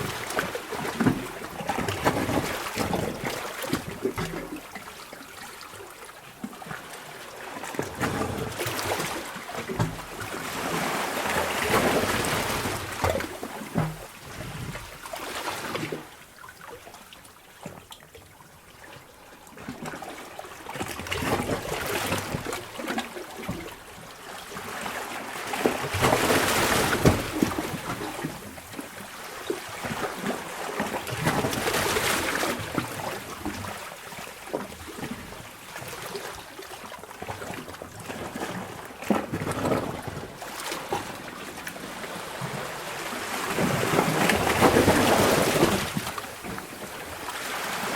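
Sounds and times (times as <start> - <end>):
waves sloshing in a cave: 0.0 - 47.9.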